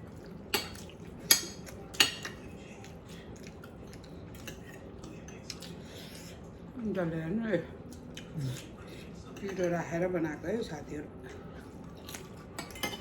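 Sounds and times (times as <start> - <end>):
cutlery clinking against plate: 0.5 - 6.3, 9.3 - 9.9, 11.3 - 13.0.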